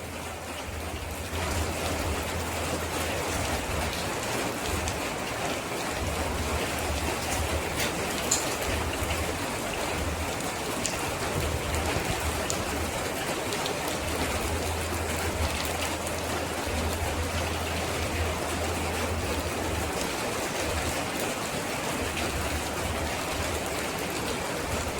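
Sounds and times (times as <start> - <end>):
steady rainfall: 0.0 - 24.9
raindrop ticks: 0.3 - 24.9
low uneven rumble: 6.0 - 21.1.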